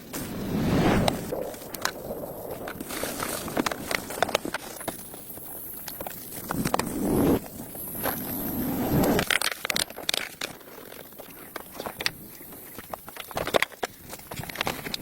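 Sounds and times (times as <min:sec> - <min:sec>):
crunching and rustling: 0:09.2 - 0:15.0.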